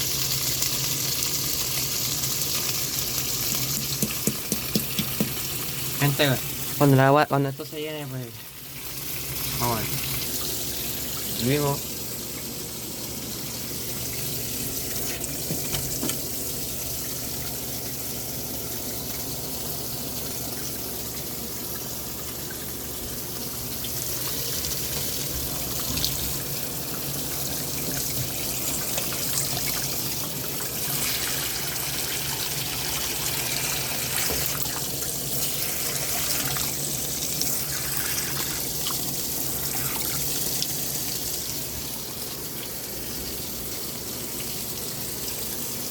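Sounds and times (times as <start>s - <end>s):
water rushing into washing machine: 0.0s - 7.1s, 8.1s - 45.9s.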